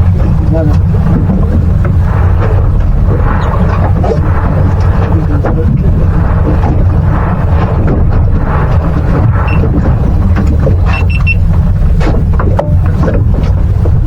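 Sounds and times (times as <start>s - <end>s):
boat engine rumble: 0.0s - 14.0s
wind on microphone: 0.0s - 14.0s
high beeps: 9.4s - 9.8s, 10.9s - 11.5s.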